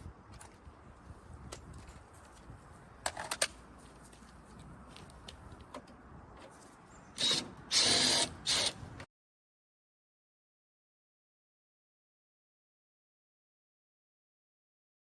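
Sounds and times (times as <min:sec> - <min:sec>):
impact driver buzzing: 0:07.2 - 0:08.8.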